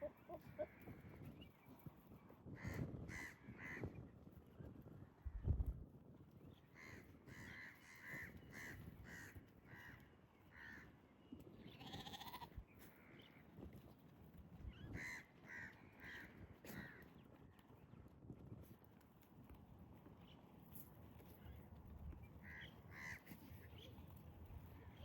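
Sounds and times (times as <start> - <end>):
goat bleating: 11.8 - 12.6.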